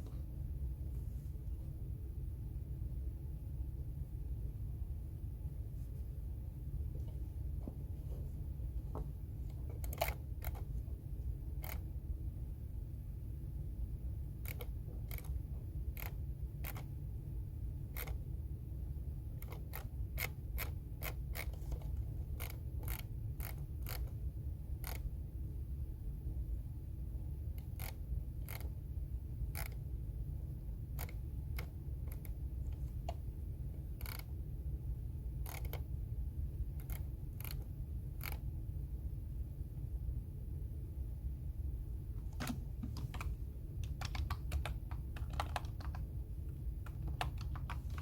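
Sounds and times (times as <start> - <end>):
steady low hum: 0.0 - 48.0
keyboard typing: 42.3 - 46.1, 46.8 - 48.0.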